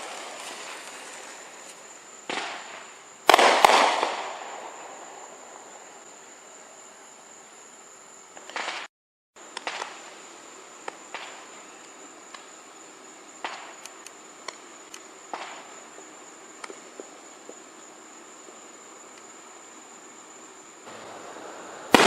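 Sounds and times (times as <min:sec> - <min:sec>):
fireworks popping: 0:00.0 - 0:05.7, 0:08.4 - 0:08.9, 0:09.5 - 0:10.1, 0:10.8 - 0:12.6, 0:13.4 - 0:17.7, 0:20.9 - 0:22.0
insect trill: 0:00.0 - 0:22.0.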